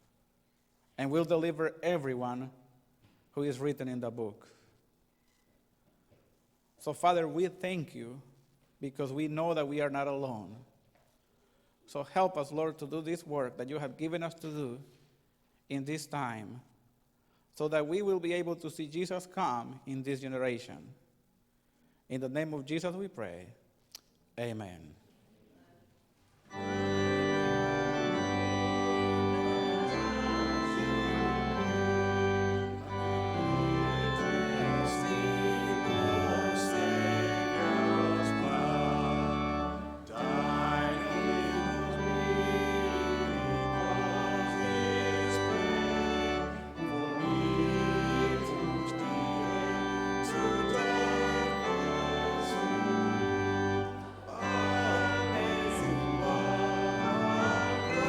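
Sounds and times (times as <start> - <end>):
organ playing sustained chords: 26.5 - 58.0.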